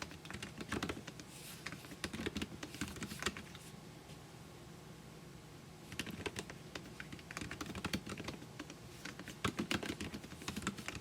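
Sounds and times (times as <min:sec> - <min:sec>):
typing on computer keyboard: 0:00.0 - 0:03.6, 0:05.9 - 0:11.0.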